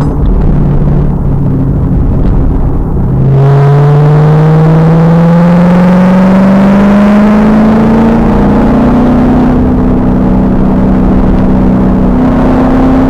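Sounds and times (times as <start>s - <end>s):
car engine at full throttle: 0.0s - 13.0s.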